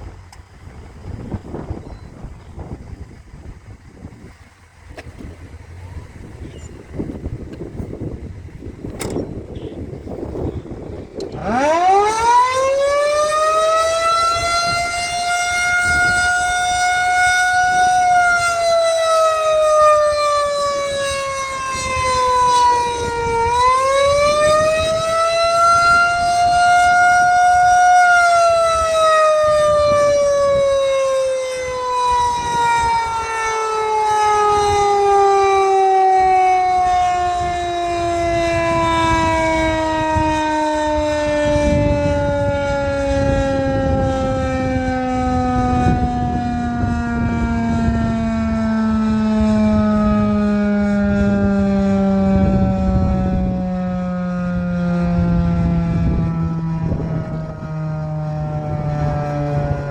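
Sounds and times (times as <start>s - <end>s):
outdoor warning siren howling: 0.0s - 59.9s.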